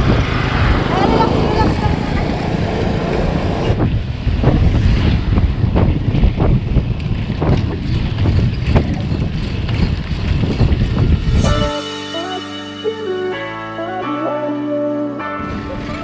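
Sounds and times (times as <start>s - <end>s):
wind buffeting microphone: 0.0s - 11.7s.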